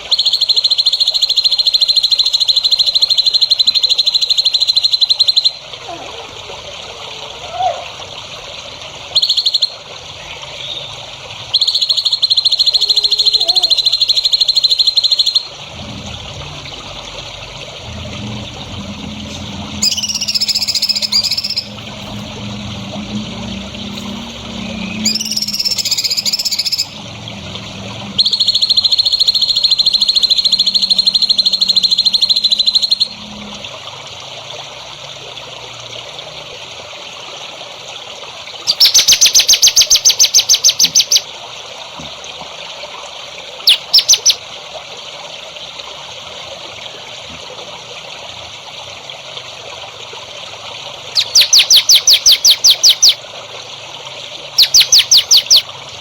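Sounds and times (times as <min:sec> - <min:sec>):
songbird calls: 0:00.0 - 0:06.1, 0:09.2 - 0:10.9, 0:11.5 - 0:15.5, 0:19.3 - 0:22.2, 0:24.0 - 0:27.0, 0:28.2 - 0:33.2, 0:38.7 - 0:41.2, 0:43.6 - 0:44.4, 0:51.2 - 0:53.2, 0:54.6 - 0:55.7
running water trickling: 0:00.0 - 0:56.0.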